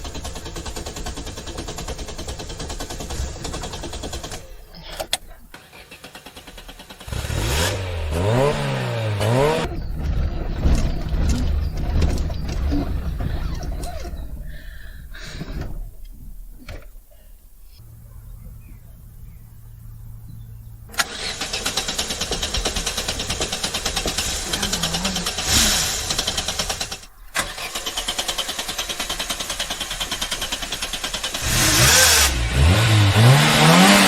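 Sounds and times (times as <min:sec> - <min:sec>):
car engine cranking and revving: 0:00.0 - 0:34.0
steady low hum: 0:09.6 - 0:27.4
sharp clicks: 0:20.9 - 0:31.9.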